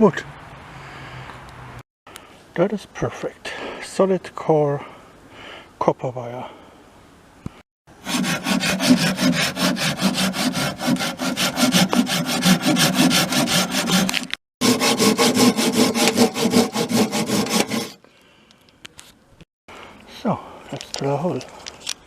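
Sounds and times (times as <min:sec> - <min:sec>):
hand saw cutting wood: 0:08.0 - 0:18.0.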